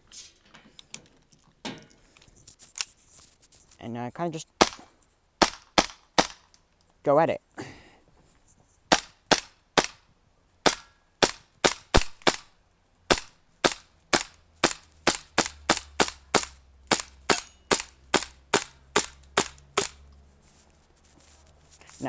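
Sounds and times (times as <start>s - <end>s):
small gun shots: 4.6s - 6.4s, 8.9s - 10.0s, 10.6s - 12.5s, 13.1s - 20.0s.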